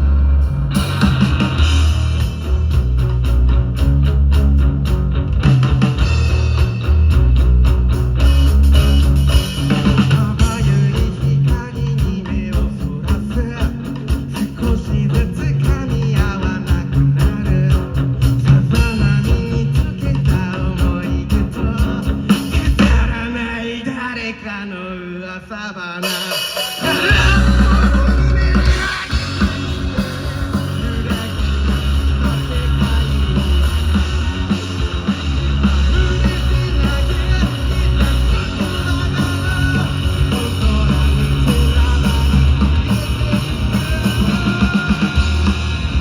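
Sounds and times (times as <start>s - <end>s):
rock music: 0.0s - 24.9s, 25.8s - 46.0s
guitar: 0.0s - 46.0s
person singing: 9.8s - 45.7s
cymbals: 26.0s - 33.6s
drum beat: 26.1s - 46.0s.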